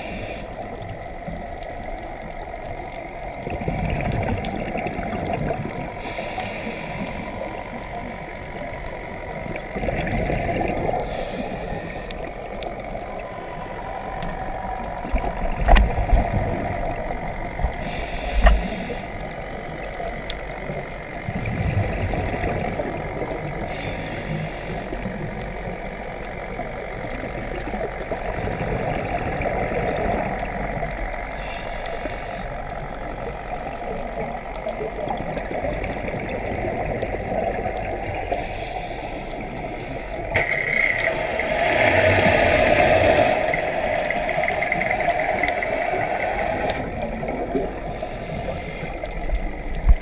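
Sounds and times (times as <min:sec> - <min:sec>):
hissing rush of exhaled bubbles: 0:03.3 - 0:19.3, 0:21.2 - 0:25.5, 0:27.2 - 0:50.0
underwater regulator bubbling: 0:27.1 - 0:50.0.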